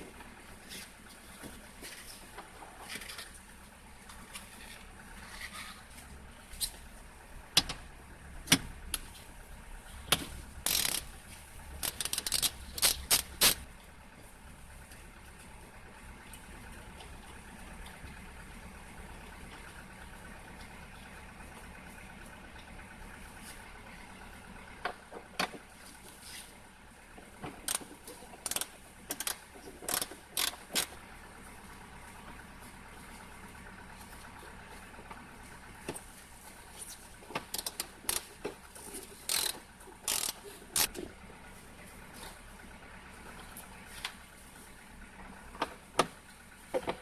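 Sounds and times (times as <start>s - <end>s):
engine idling: 0.0s - 47.0s
sharp clicks and knocks: 7.5s - 9.3s, 10.0s - 13.7s, 27.4s - 31.0s, 37.2s - 41.1s.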